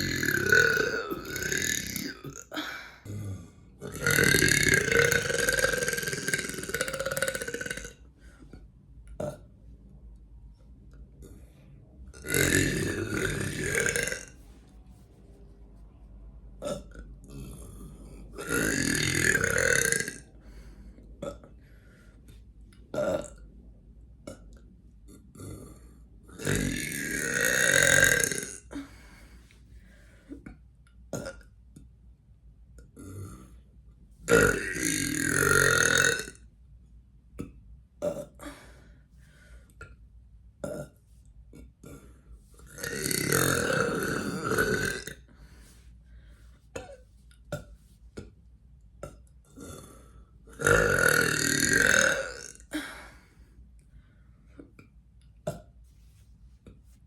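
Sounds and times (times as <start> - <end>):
person burping loudly: 0.0 - 8.1, 9.1 - 9.5, 12.2 - 14.4, 16.6 - 21.6, 22.9 - 23.4, 24.2 - 29.1, 31.1 - 31.5, 32.9 - 33.6, 34.3 - 36.4, 37.4 - 38.6, 40.6 - 45.3, 49.0 - 53.2.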